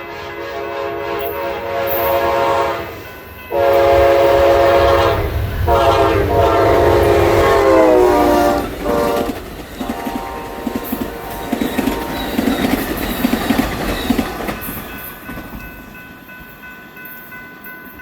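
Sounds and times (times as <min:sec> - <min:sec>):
locomotive air horn blasts: 0:00.0 - 0:12.5
passing train rumble: 0:00.0 - 0:18.0.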